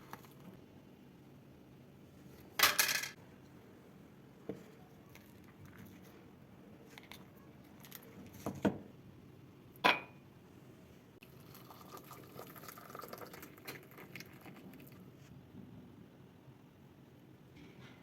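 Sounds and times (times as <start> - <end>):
glassware and utensils clinking: 9.8 - 10.2.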